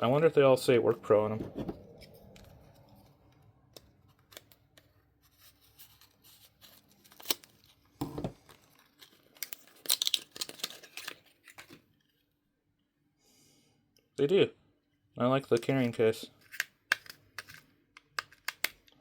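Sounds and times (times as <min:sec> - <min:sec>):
plastic clicks and scrapes: 0:16.4 - 0:19.0.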